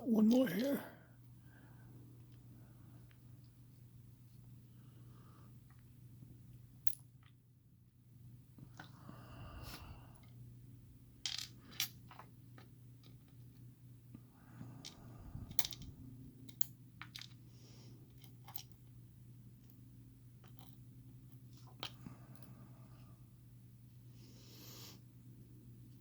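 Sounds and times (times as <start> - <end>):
small metal pins clicking: 14.9 - 17.4.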